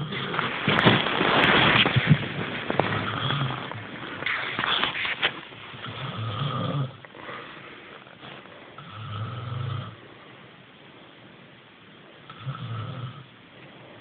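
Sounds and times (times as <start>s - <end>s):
low rattling snores: 0.0s - 0.5s, 2.8s - 4.8s, 5.8s - 7.4s, 8.2s - 10.1s, 12.2s - 13.4s
sharp clicks or rustles: 0.2s - 5.6s.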